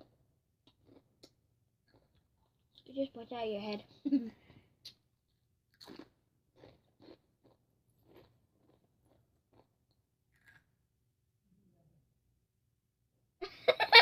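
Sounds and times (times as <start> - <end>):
chewing crunchy chips: 0.0 - 2.9, 5.7 - 10.7.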